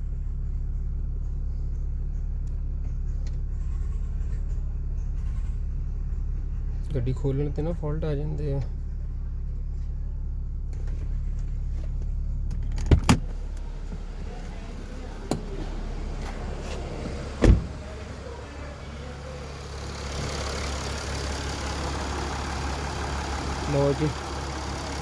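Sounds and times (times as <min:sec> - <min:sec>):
car engine idling: 0:00.0 - 0:25.0
car door shutting: 0:11.8 - 0:20.9.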